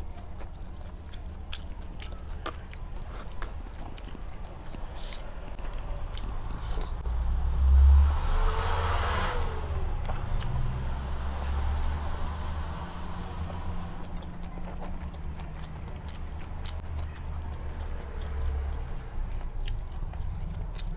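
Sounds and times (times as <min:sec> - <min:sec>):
chewing and mouth clicks: 0:00.0 - 0:07.1, 0:09.4 - 0:20.9
steady high whine: 0:00.0 - 0:20.9
rushing noise: 0:06.5 - 0:14.0.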